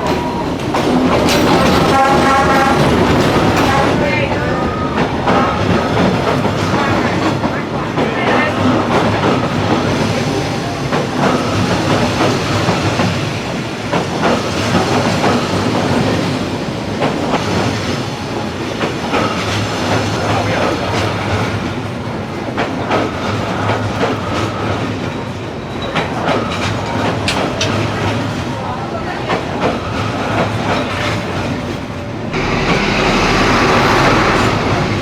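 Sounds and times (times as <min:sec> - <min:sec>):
wheels clicking over rail joints: 0:00.0 - 0:07.6
train rumbling: 0:00.0 - 0:35.0.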